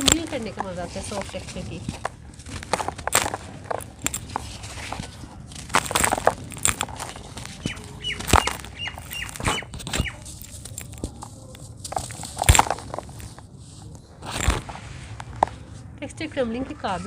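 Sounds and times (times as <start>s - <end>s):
dirt crumbling by hand: 0.0s - 16.0s
bird chirping: 7.0s - 10.5s.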